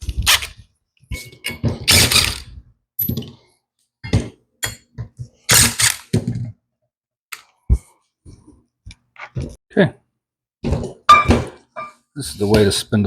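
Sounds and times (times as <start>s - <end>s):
metal parts rattling: 0.0s - 3.2s
metal parts clinking and knocking: 0.0s - 3.3s.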